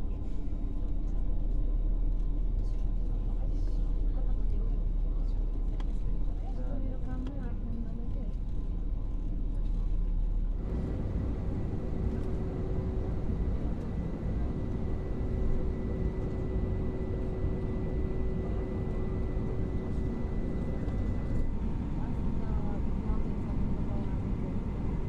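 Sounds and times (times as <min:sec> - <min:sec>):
airliner cabin rumble: 0:00.0 - 0:25.0
faint steady whine: 0:10.1 - 0:25.0.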